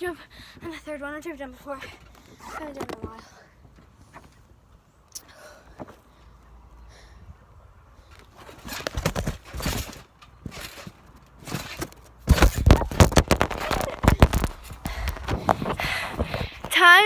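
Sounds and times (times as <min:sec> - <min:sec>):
thumps on a trampoline: 0:08.1 - 0:16.8.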